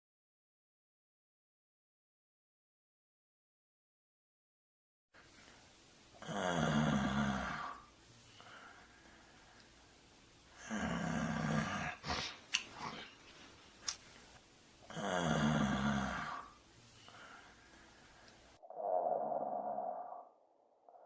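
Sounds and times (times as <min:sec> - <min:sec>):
person snoring: 0:06.2 - 0:08.9, 0:10.5 - 0:13.1, 0:14.9 - 0:17.6.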